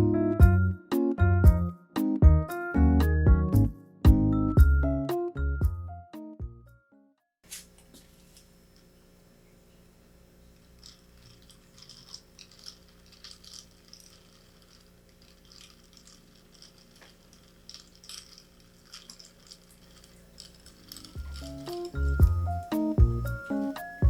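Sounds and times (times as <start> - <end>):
kitchenware clinking: 10.8 - 24.0.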